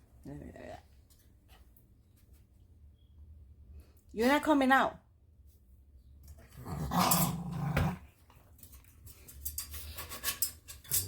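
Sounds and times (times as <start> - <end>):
dog growling: 6.6 - 8.1.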